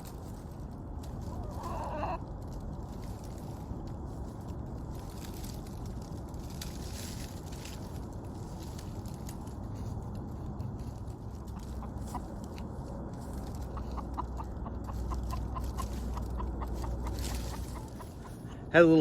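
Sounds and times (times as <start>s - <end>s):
low steady rumble: 0.0s - 19.0s
chicken clucking: 1.1s - 2.2s, 11.3s - 18.7s.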